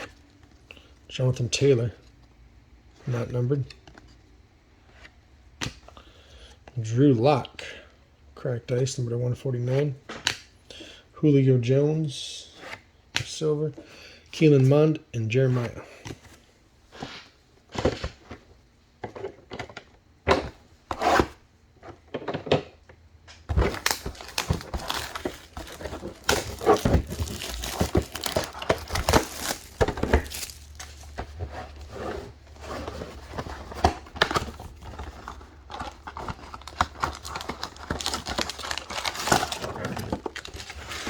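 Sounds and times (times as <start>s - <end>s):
plastic packaging crinkling and tearing: 23.5s - 31.8s, 32.6s - 41.0s.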